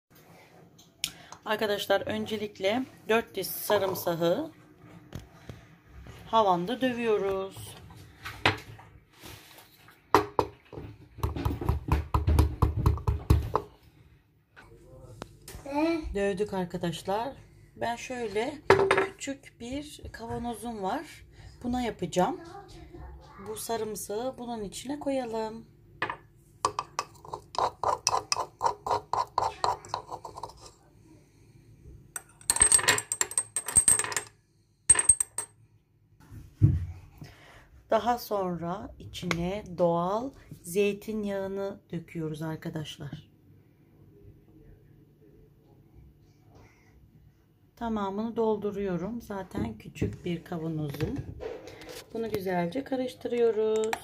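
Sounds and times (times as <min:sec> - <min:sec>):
pestle pounding in a mortar: 0:26.7 - 0:30.6
utensil scraping a container: 0:27.0 - 0:30.9.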